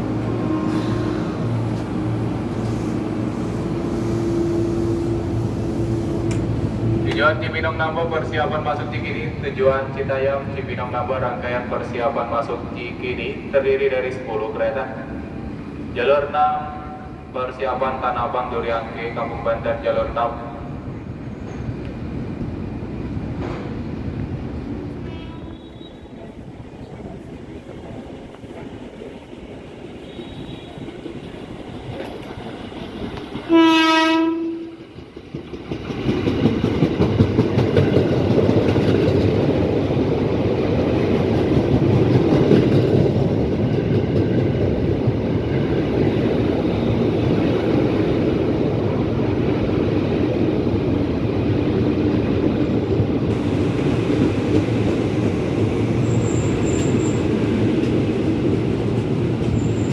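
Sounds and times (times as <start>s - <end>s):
train rumbling past: 0.0s - 59.9s
train horn blast: 33.5s - 34.8s.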